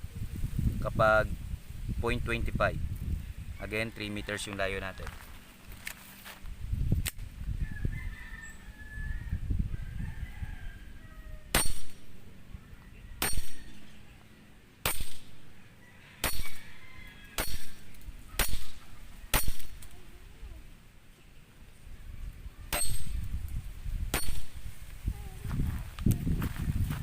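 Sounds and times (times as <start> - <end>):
airsoft pistol shots: 11.5 - 12.1, 13.2 - 13.8, 14.8 - 15.4, 16.2 - 16.6, 17.4 - 19.9, 22.7 - 23.2, 24.1 - 24.6.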